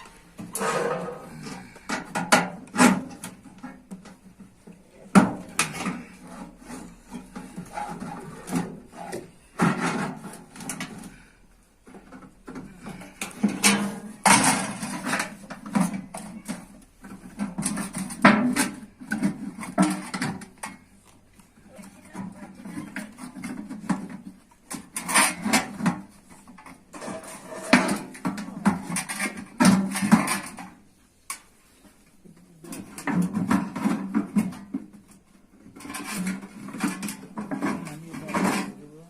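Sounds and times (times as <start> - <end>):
scraping and rubbing: 0.0 - 4.4, 5.5 - 11.0, 22.0 - 30.5.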